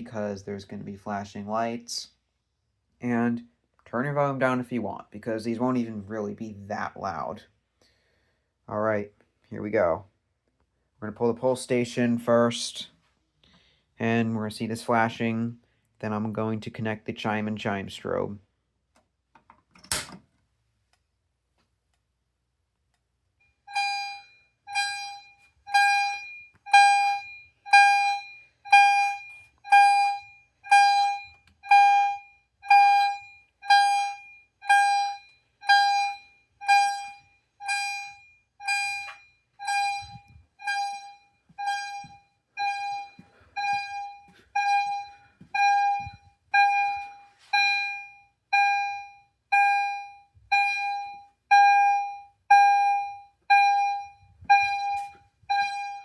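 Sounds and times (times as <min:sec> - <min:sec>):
fire alarm chimes: 0:23.4 - 0:56.0.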